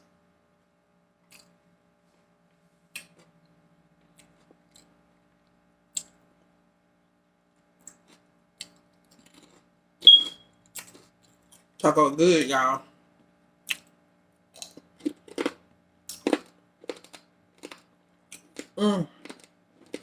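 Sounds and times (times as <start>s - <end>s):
mouth clicks while chewing: 1.3s - 1.6s, 2.9s - 3.3s, 5.9s - 6.2s, 7.8s - 9.6s, 13.7s - 14.0s.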